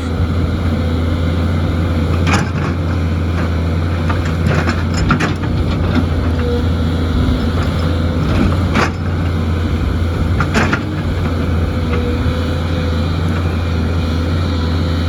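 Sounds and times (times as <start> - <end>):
excavator diesel engine running: 0.0 - 15.0
machine knocks and clatters: 2.1 - 6.4.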